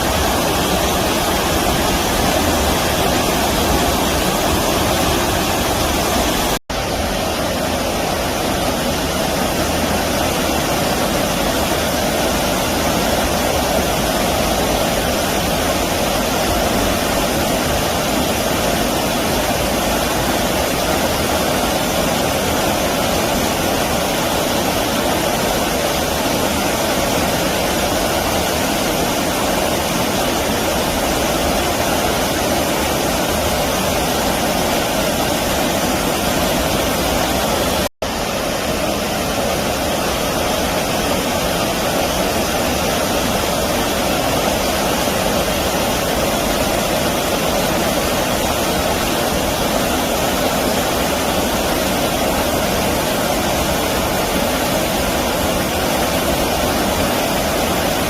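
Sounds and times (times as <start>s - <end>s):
stream water rushing: 0.0s - 58.0s.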